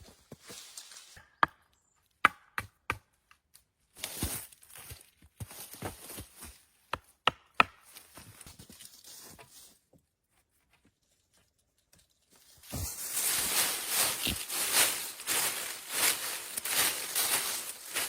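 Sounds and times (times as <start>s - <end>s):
scraping rustle: 10.9s - 18.0s.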